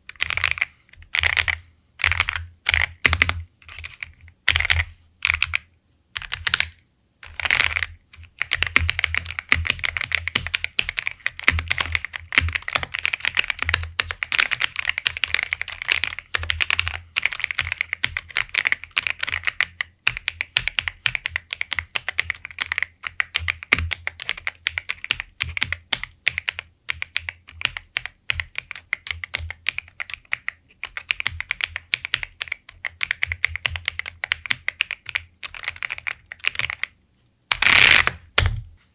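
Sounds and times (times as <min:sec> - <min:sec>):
mechanical keyboard typing: 0:00.1 - 0:38.6.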